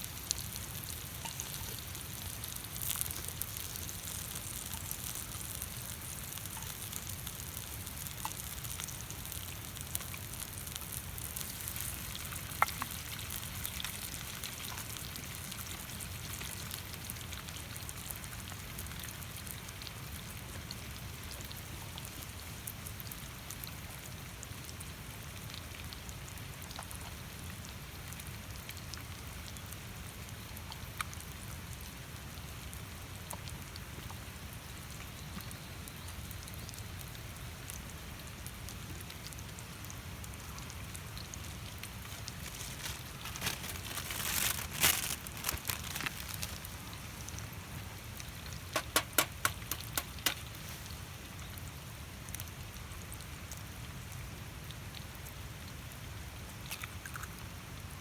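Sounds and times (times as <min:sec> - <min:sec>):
food sizzling on a griddle: 0:00.0 - 0:23.1, 0:48.5 - 0:51.0
sharp pops: 0:48.7 - 0:50.6.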